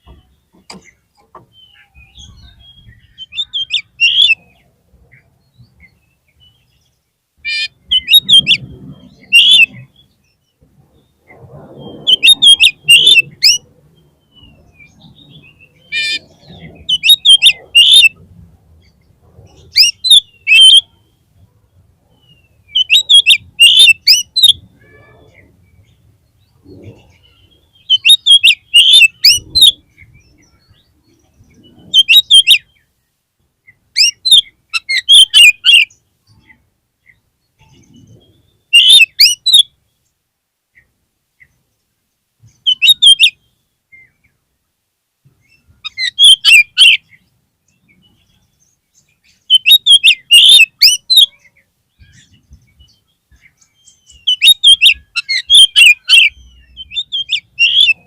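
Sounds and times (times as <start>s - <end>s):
bird singing whistled phrases: 1.6s - 4.5s, 7.5s - 9.8s, 11.8s - 13.6s, 14.3s - 18.2s, 19.7s - 21.0s, 22.3s - 25.4s, 27.1s - 30.8s, 31.6s - 32.8s, 34.0s - 36.0s, 37.6s - 39.7s, 42.6s - 43.6s, 45.9s - 47.0s, 49.4s - 51.4s, 53.6s - 58.0s.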